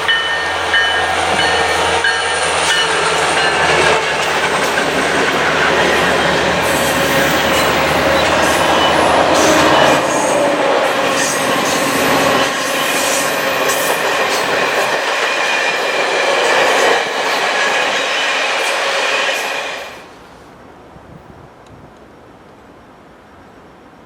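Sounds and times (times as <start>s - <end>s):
wheels clicking over rail joints: 0.0s - 18.7s
train wheels squealing: 0.0s - 20.0s
train rolling by: 0.0s - 20.8s.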